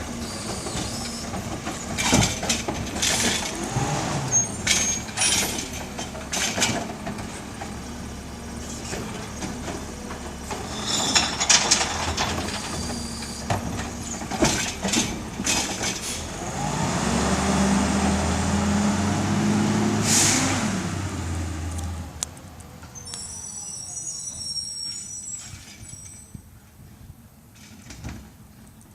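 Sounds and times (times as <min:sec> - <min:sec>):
garbage truck engine: 0:00.0 - 0:23.1
knocks and clangs: 0:10.8 - 0:12.8
air brake hiss: 0:20.0 - 0:20.5.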